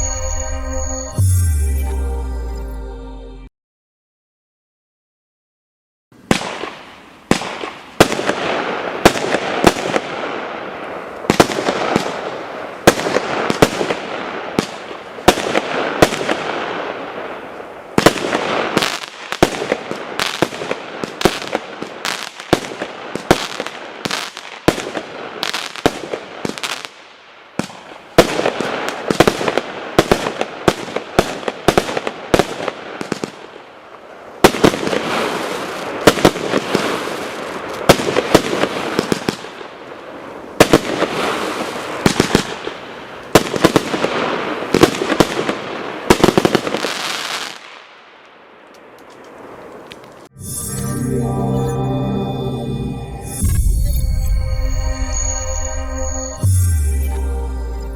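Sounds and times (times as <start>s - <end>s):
firework sharp bangs: 6.2s - 27.0s, 34.4s - 39.6s
firework crackling: 34.4s - 39.6s.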